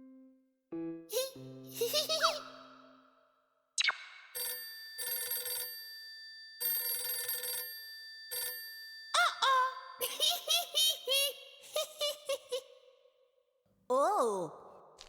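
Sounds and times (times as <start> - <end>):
telephone bell ringing: 4.4 - 9.2.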